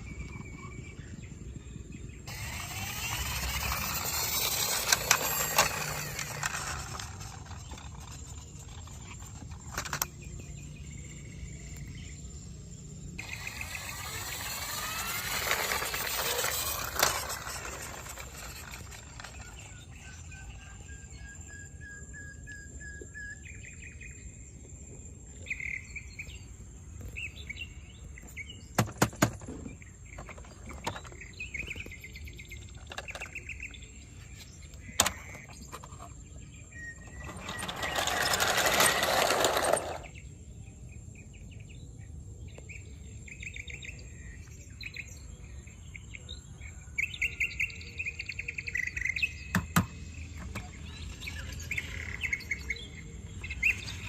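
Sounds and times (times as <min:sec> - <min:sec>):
faint high whine: 0:00.0 - 0:23.5
small birds chirping: 0:00.0 - 0:54.0.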